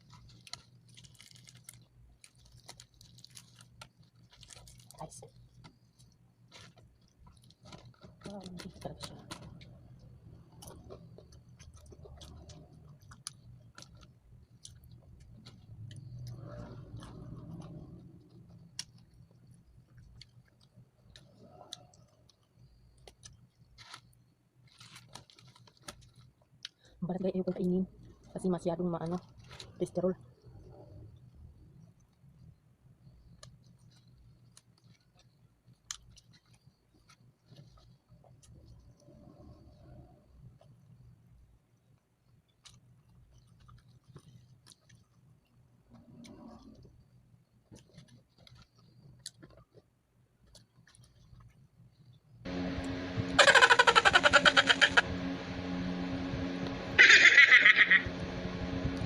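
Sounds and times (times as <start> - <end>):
person chewing crunchy food: 0.0 - 26.8
crisp clicks of eating fried chicken: 0.0 - 28.2, 33.1 - 39.1, 42.4 - 45.3, 47.7 - 52.2.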